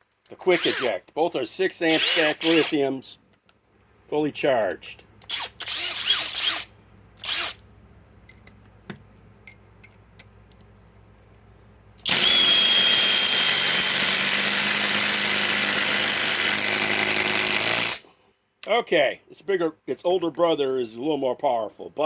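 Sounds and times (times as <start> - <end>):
impact wrench hammering: 12.0 - 18.0.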